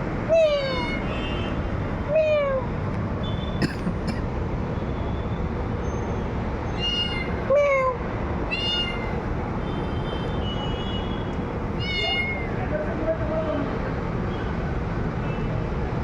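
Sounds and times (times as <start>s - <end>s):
cat meowing: 0.3s - 1.0s, 6.8s - 9.2s, 11.8s - 12.6s
faint high-pitched cat calls: 0.3s - 1.2s, 6.7s - 9.2s, 11.8s - 12.6s.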